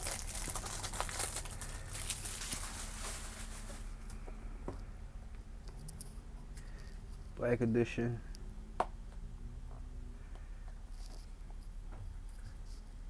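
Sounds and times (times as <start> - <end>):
plastic wrapping crinkling: 0.0 - 4.1.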